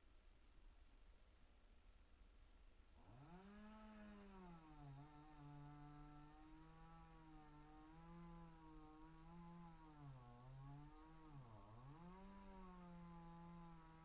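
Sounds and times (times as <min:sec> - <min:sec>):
faint chainsaw cutting at high revs: 0:03.0 - 0:14.0.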